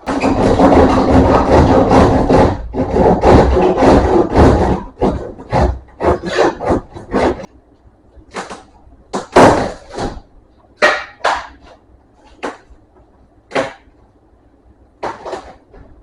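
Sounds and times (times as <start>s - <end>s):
hand scraping hard surface: 0.0s - 7.5s.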